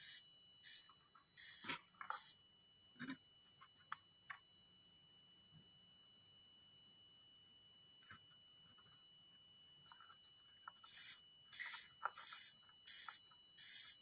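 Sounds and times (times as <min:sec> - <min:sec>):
faint thin whistles: 0:09.8 - 0:14.0.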